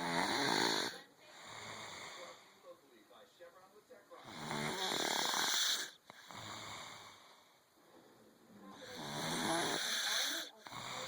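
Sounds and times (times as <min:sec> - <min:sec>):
person snoring: 0:00.0 - 0:02.4, 0:04.2 - 0:07.3, 0:08.8 - 0:11.0.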